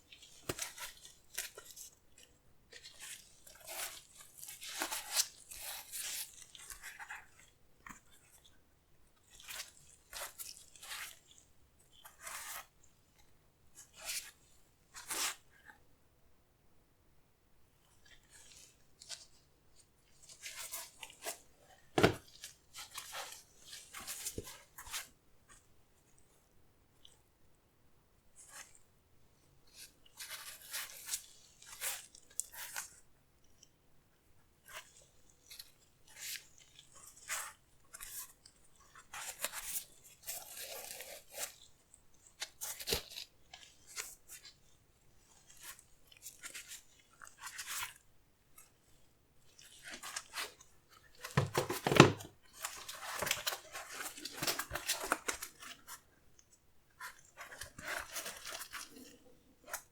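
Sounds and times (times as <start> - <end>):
paper and cardboard crinkling: 22.0 - 22.4, 51.2 - 55.8.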